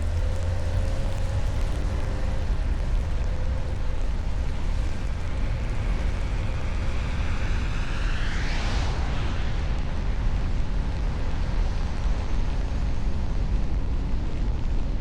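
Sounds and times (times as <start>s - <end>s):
rising whine: 0.0s - 10.6s
road and wind rumble: 0.0s - 15.0s.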